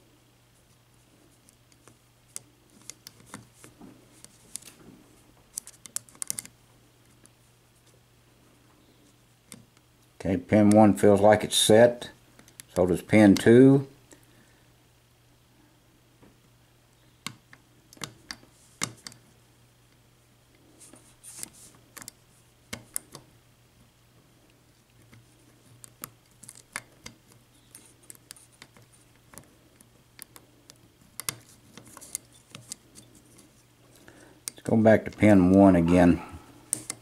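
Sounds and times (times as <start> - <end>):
lock pick clicking and scraping: 5.5 - 6.5, 25.0 - 33.5, 36.7 - 37.0.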